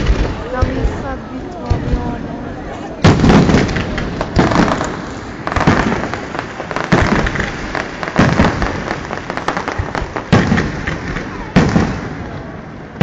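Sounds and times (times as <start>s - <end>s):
fireworks crackling: 0.0s - 13.0s
firework shells bursting: 3.0s - 12.0s.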